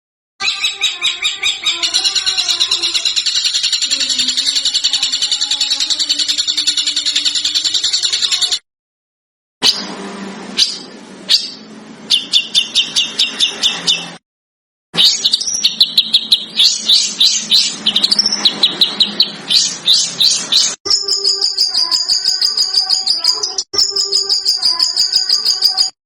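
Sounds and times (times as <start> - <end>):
high rapidly pulsing bird trill: 0.4 - 8.6, 10.6 - 14.2, 15.0 - 26.0
songbird chirps: 10.6 - 14.2, 15.0 - 26.0.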